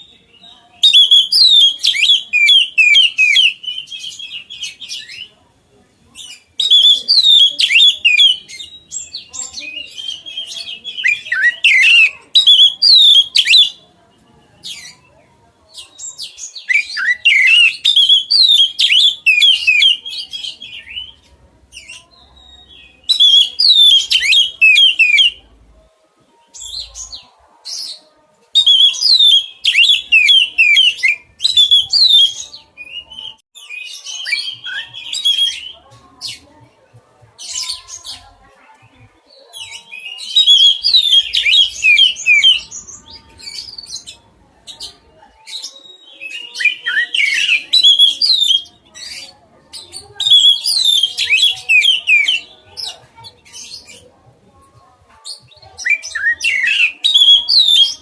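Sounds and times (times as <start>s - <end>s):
bird singing whistled notes: 0.0s - 5.3s, 6.3s - 13.8s, 15.9s - 21.2s, 21.8s - 25.4s, 28.6s - 35.8s, 39.6s - 44.9s, 45.5s - 49.3s, 50.2s - 52.5s, 55.8s - 58.0s.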